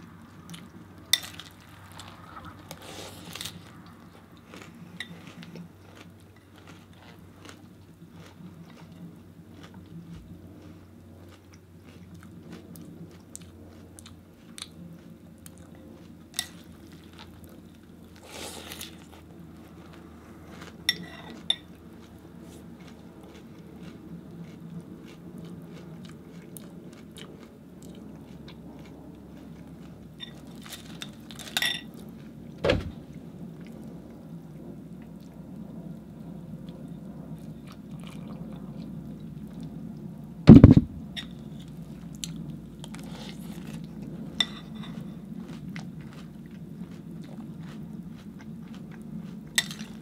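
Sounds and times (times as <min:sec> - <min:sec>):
cereal crunching while chewed: 0:00.1 - 0:32.4, 0:41.2 - 0:50.0
loud knocks: 0:32.6 - 0:33.0, 0:40.5 - 0:41.0.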